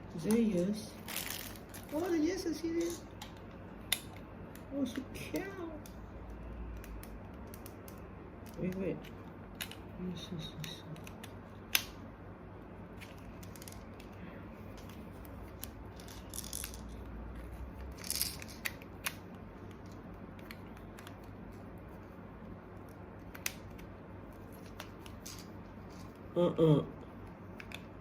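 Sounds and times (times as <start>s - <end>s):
plastic toy parts clicking: 2.8s - 6.0s.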